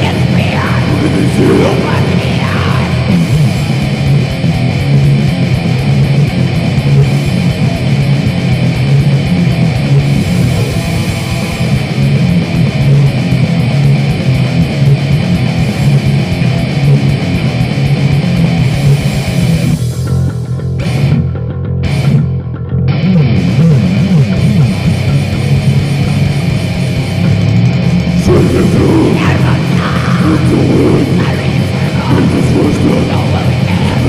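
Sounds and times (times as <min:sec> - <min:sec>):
rapid drums: 0:00.0 - 0:21.2
bass guitar: 0:00.0 - 0:34.0
distorted electric guitar: 0:00.0 - 0:34.0.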